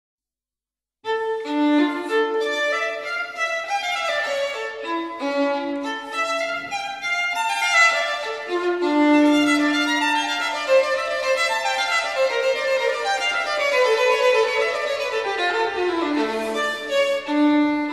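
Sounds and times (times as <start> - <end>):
violin melody: 1.0 - 17.9.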